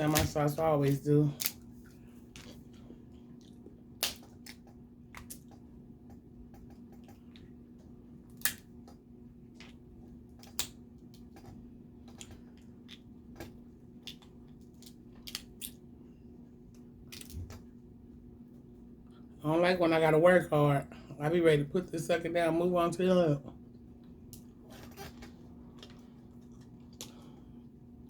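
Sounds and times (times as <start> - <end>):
crab shells cracking: 0.0 - 1.7, 3.9 - 5.5, 8.3 - 8.7, 10.4 - 10.8, 14.0 - 15.8
faint steady hum: 0.0 - 28.0.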